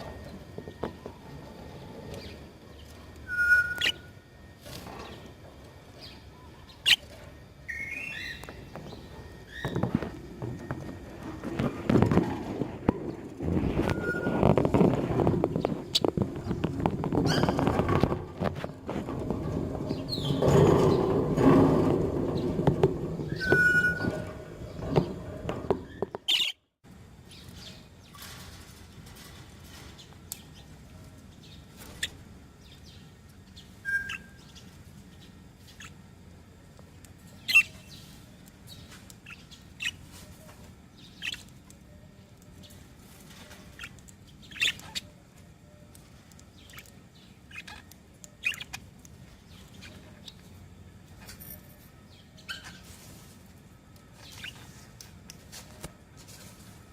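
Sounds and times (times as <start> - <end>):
budgerigars chirping: 26.3 - 26.6, 48.4 - 48.8.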